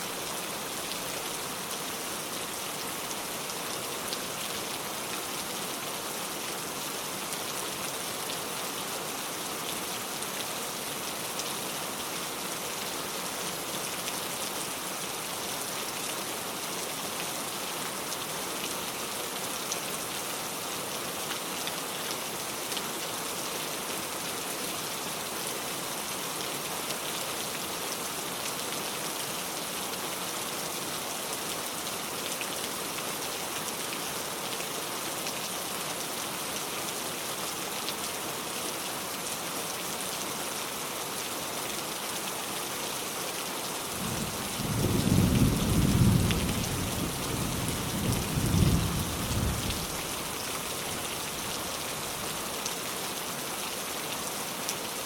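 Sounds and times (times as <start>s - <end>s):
steady rain falling: 0.0s - 55.0s
low rumble of thunder: 44.0s - 50.0s.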